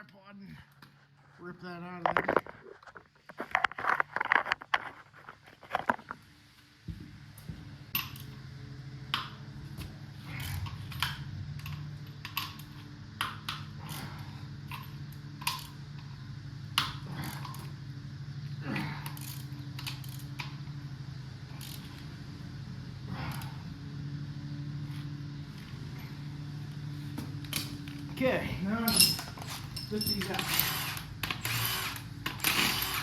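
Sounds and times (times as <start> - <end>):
steady low hum: 0.0 - 33.0
metal tools clinking: 27.5 - 33.0.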